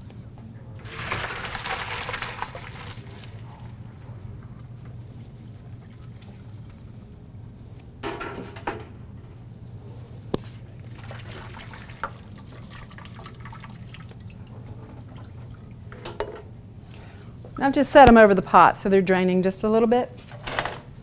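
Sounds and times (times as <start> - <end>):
water dripping and trickling: 10.8 - 15.7.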